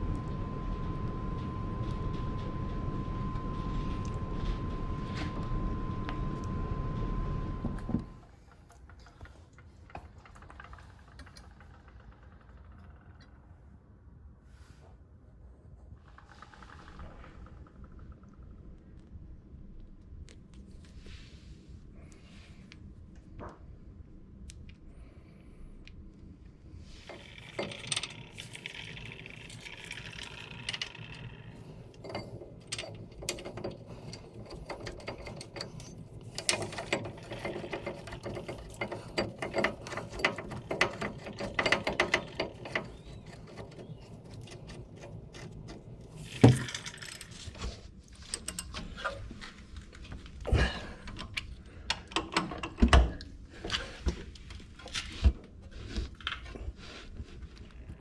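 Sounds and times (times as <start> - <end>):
hand ratchet clicking: 32.0 - 45.1.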